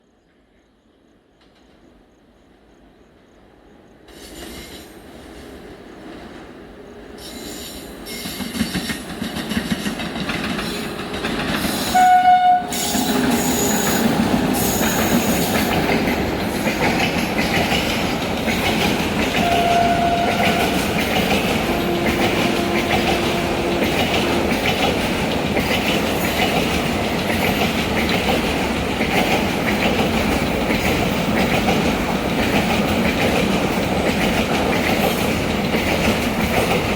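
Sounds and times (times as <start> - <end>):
train wheels squealing: 4.1 - 5.0, 7.2 - 9.1, 11.5 - 15.9
train wheels clattering: 7.2 - 36.9
train horn blast: 11.8 - 15.4, 19.3 - 24.7.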